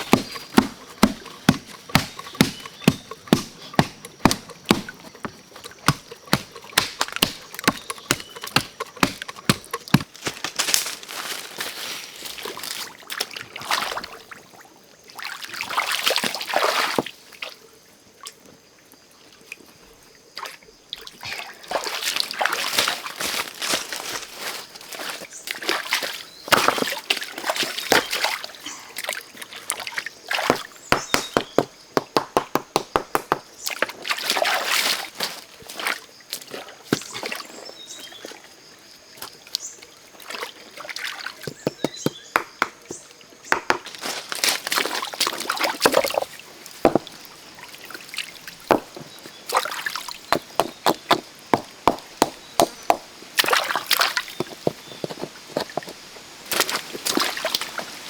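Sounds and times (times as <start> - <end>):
water sloshing and splashing: 0.0 - 17.4, 20.4 - 38.5, 43.9 - 52.8, 53.4 - 58.0
quick sharp clicks and knocks: 30.5 - 33.4.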